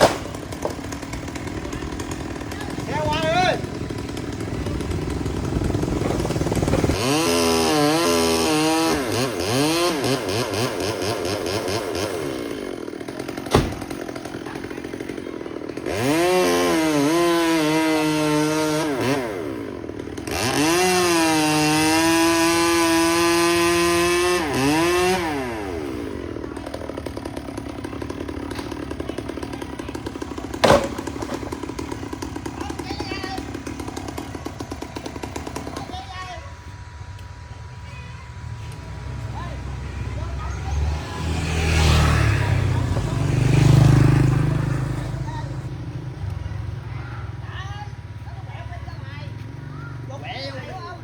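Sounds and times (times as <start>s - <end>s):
chainsaw revving: 0.0s - 37.3s, 38.6s - 47.0s
sharp knocks: 13.4s - 14.0s, 30.6s - 31.5s.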